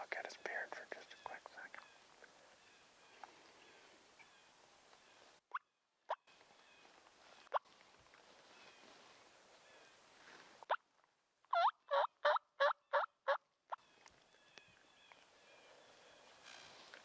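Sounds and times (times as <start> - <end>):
turkey gobbling: 11.5 - 13.4.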